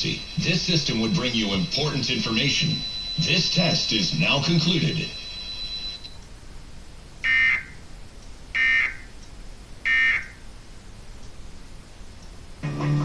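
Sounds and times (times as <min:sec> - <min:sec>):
warbling digital data tones: 0:00.0 - 0:06.2.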